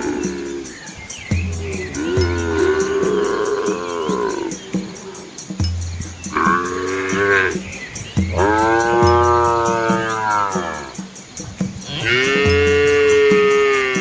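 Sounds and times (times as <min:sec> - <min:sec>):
cattle mooing: 0:00.0 - 0:00.8, 0:01.5 - 0:05.4, 0:06.3 - 0:07.6, 0:08.3 - 0:11.0.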